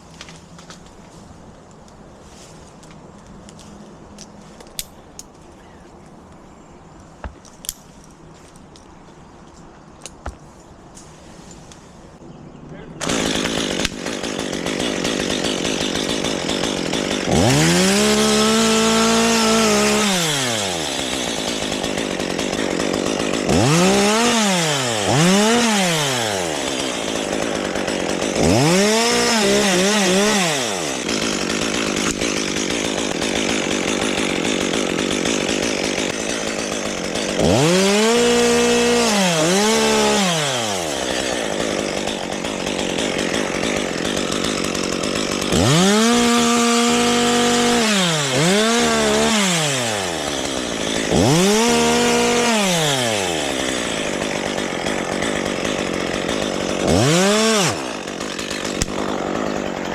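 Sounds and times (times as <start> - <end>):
chainsaw idling and revving: 13.0 - 59.9.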